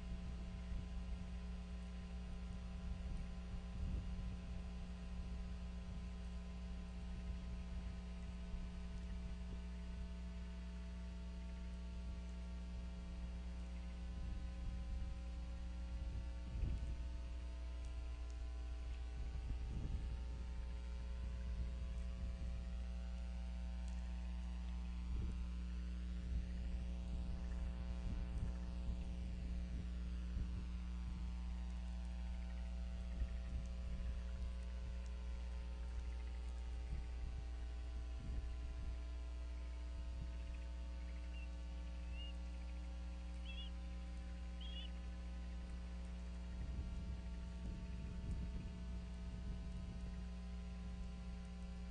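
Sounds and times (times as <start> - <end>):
electrical mains hum: 0.0 - 51.9
faint high chirps: 39.7 - 45.1.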